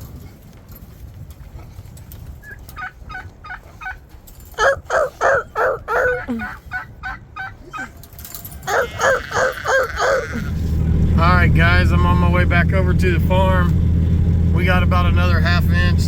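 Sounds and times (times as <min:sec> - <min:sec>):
turkeys calling: 0:02.4 - 0:08.0, 0:08.7 - 0:10.8.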